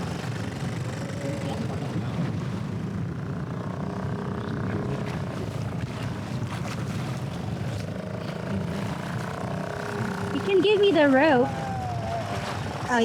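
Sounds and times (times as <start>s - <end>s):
outboard motor running: 0.0s - 13.0s
wind noise on microphone: 11.4s - 13.0s.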